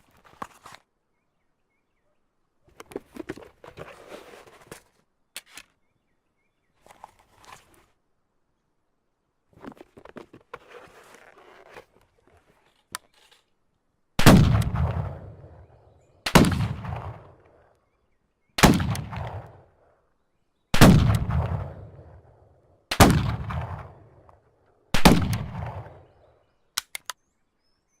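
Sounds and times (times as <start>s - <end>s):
revolver shots echoing: 16.3s - 17.4s, 22.9s - 24.0s
faint small clicks: 26.8s - 27.2s.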